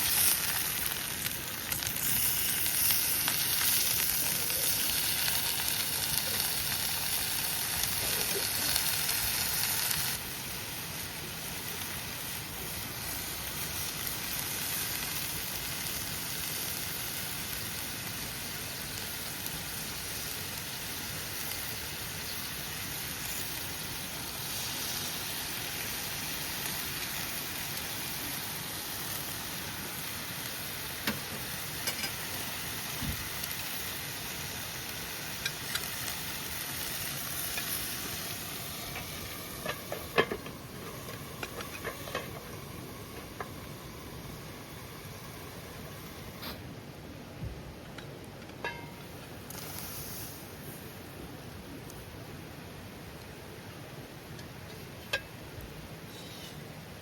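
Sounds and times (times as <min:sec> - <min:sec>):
food sizzling in a hot pan: 0:00.0 - 0:46.6, 0:48.6 - 0:51.0, 0:55.1 - 0:57.0.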